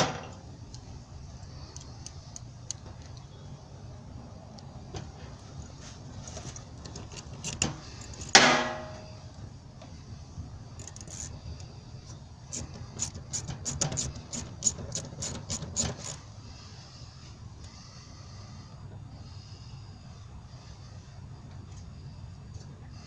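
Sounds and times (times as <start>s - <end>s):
hand tools tapping on metal: 6.3s - 9.1s
metal clang ringing: 8.3s - 9.2s.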